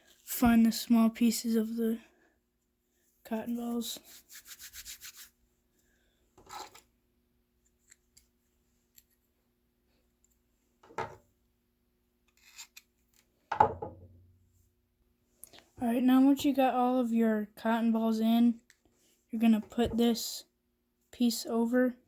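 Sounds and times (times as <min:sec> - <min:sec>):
screwdriver scraping in metal lighter: 0:12.3 - 0:12.9.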